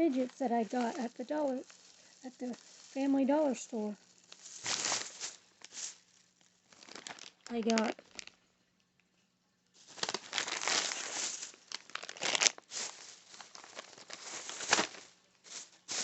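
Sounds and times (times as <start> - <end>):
bag crinkling and rustling: 0.0 - 8.4, 9.8 - 16.0.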